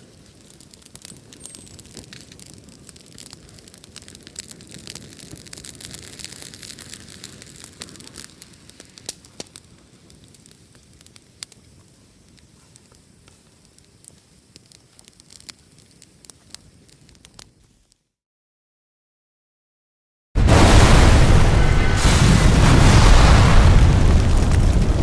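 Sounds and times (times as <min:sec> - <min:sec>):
fireplace fire crackling: 0:00.0 - 0:18.0, 0:20.4 - 0:25.0.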